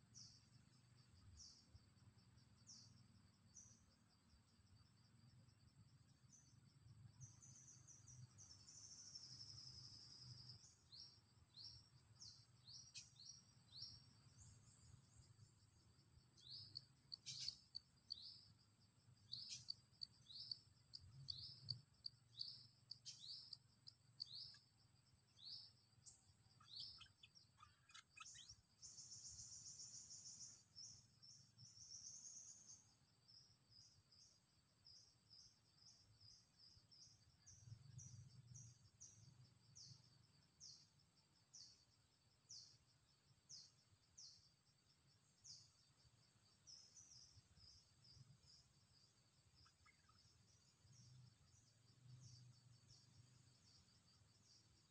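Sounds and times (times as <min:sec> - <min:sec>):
songbird chirping and trilling: 0:06.3 - 0:15.6, 0:16.2 - 0:24.7, 0:25.3 - 0:33.9, 0:45.4 - 0:54.9.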